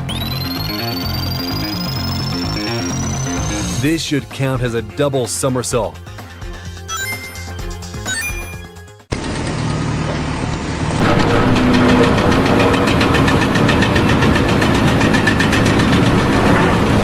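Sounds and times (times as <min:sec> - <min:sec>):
loud engine pulsing: 0:00.0 - 0:03.9, 0:09.1 - 0:17.0.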